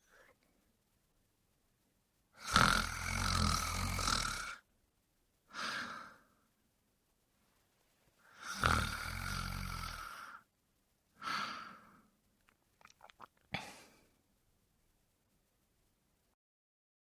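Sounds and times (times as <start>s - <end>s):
man snoring: 2.4s - 4.6s, 8.4s - 10.4s.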